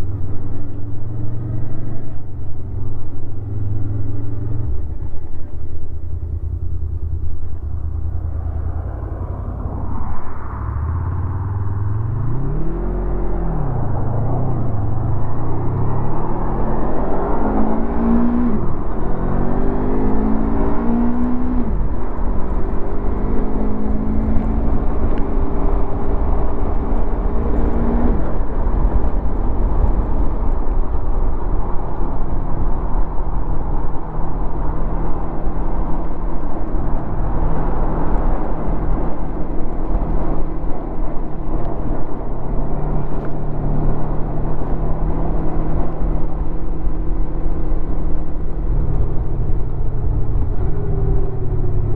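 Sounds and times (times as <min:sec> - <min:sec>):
motorcycle engine accelerating: 0:00.0 - 0:51.9
steady rushing noise: 0:04.4 - 0:51.9.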